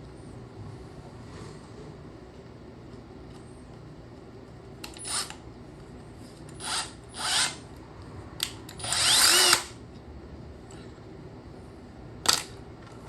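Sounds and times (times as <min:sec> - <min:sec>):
power drill drilling into metal: 0:06.6 - 0:07.6, 0:08.8 - 0:09.7.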